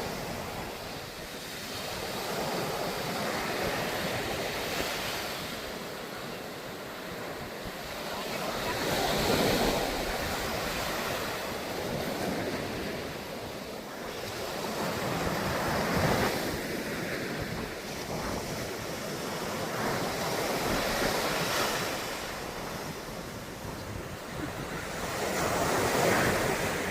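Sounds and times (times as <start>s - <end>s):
sea waves breaking on shore: 0.0s - 26.9s
wind buffeting microphone: 6.8s - 26.9s.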